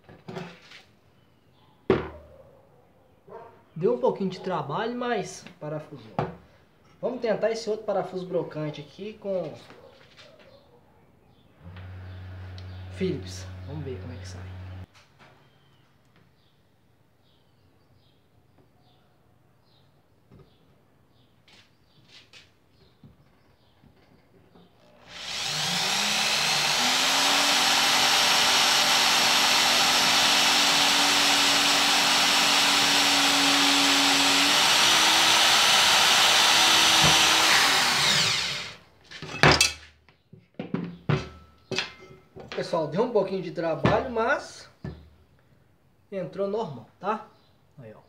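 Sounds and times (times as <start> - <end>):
drill driving screw into steel: 24.8 - 38.8.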